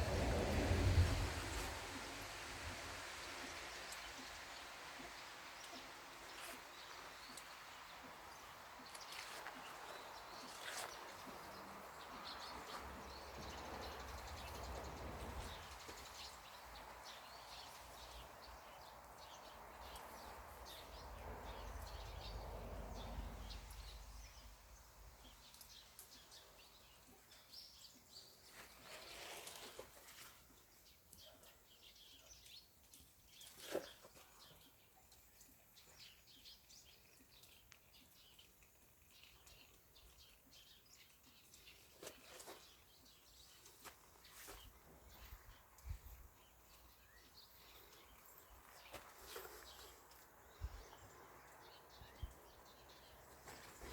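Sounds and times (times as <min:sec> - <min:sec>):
wind on microphone rumble: 0:00.0 - 0:03.4
small birds chirping: 0:00.0 - 0:53.9.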